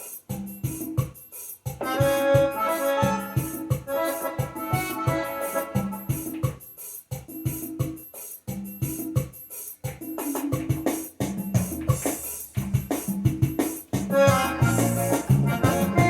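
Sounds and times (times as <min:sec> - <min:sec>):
drum and bass accompaniment rhythm: 0:00.0 - 0:16.0
keyboard chords: 0:01.8 - 0:06.5, 0:14.1 - 0:16.0.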